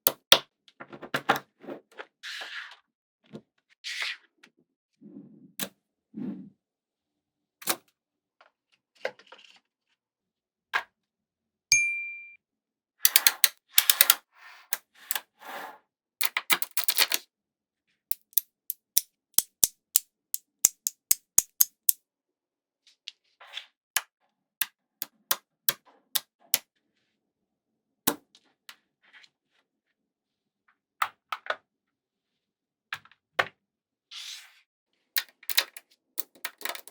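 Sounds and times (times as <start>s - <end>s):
short ringing tone: 11.7s - 12.4s
magnetic balls clicking together: 13.1s - 14.2s, 18.1s - 22.0s, 35.2s - 36.9s.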